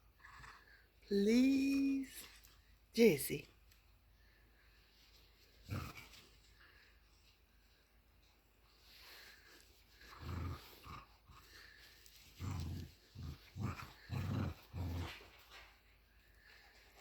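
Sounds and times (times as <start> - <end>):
puppy growling: 5.6 - 6.3, 10.0 - 15.8.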